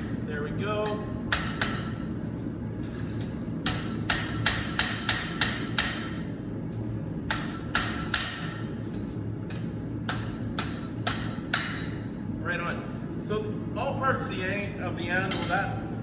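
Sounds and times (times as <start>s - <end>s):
steady low hum: 0.0s - 16.0s
hammer striking steel on anvil: 0.8s - 2.1s, 3.6s - 6.3s, 7.3s - 8.7s, 9.5s - 12.0s.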